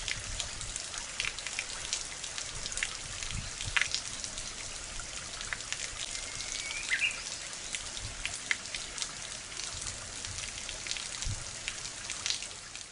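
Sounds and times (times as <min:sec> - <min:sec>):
bird whistle: 0:06.2 - 0:07.2.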